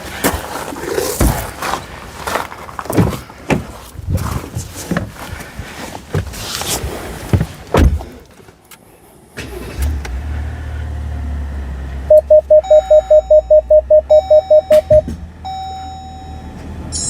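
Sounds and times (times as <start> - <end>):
handling noises: 0.0 - 8.9
truck engine starting and idling: 9.2 - 17.0.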